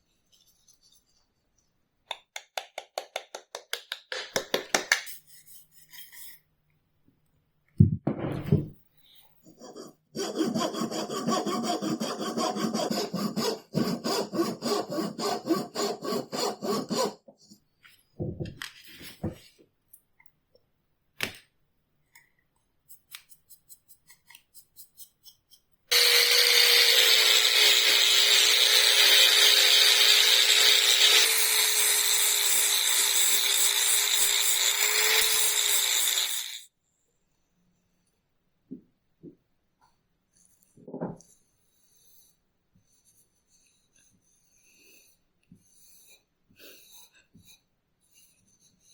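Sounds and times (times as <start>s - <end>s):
hand saw cutting wood: 9.6s - 17.2s, 25.9s - 36.6s
power tool motor: 25.9s - 36.7s.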